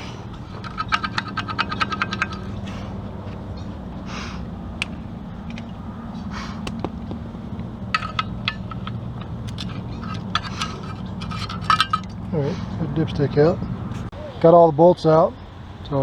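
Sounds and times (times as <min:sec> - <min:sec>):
hand ratchet clicking: 0:00.0 - 0:03.5, 0:07.9 - 0:12.3
metal clicks: 0:00.0 - 0:03.8, 0:04.8 - 0:05.8, 0:06.6 - 0:12.3
low hum: 0:00.0 - 0:14.1.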